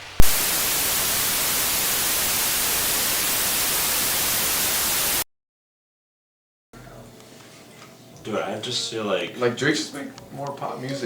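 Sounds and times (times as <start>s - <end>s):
television static hiss: 0.0s - 5.2s.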